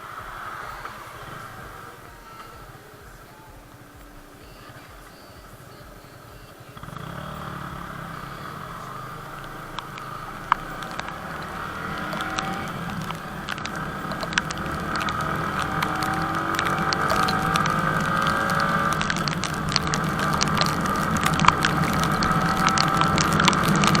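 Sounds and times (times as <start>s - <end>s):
motorcycle engine riding: 0.0s - 24.0s.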